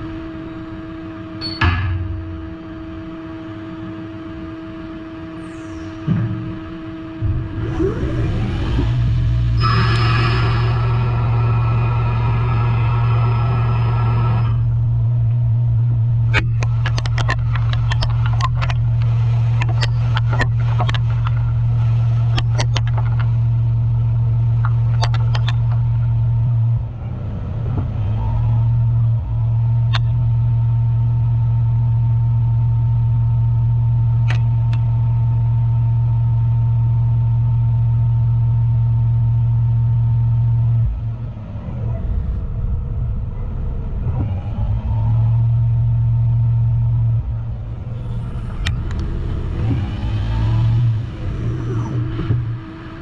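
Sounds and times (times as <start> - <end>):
thin steady whine: 0.0 - 53.0
lathe cutting metal drone: 2.3 - 27.0.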